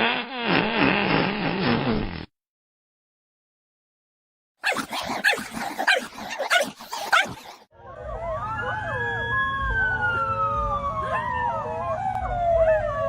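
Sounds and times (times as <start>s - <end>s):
dog barking: 4.6s - 7.6s
siren falling tone: 7.8s - 13.0s.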